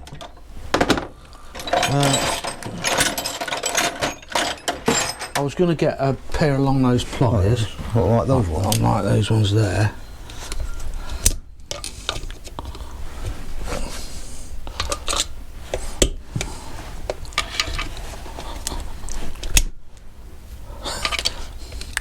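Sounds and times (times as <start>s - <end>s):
metal parts clinking and scraping: 0.0s - 5.8s, 14.8s - 15.8s, 17.3s - 18.7s, 20.9s - 21.5s.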